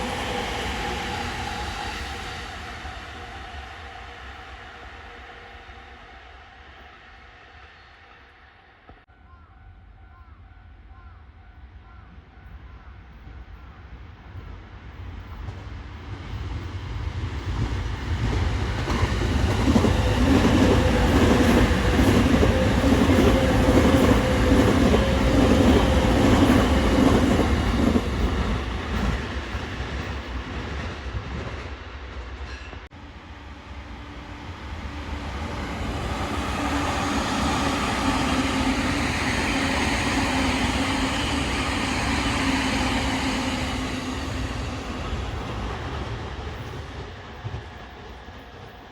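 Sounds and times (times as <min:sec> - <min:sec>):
train wheels on rails: 0:12.6 - 0:48.9.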